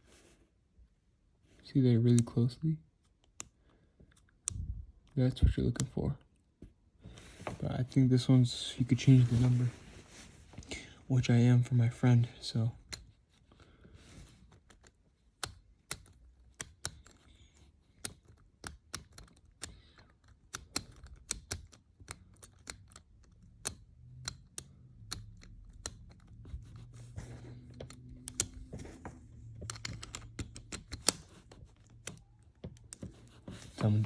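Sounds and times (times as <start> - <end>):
combination lock clicking: 27.7 - 33.0.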